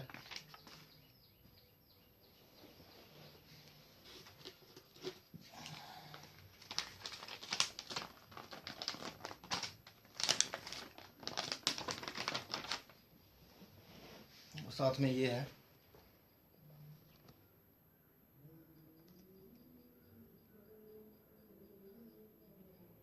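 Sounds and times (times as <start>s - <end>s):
packaging crinkling: 0.0s - 1.0s, 4.1s - 13.0s.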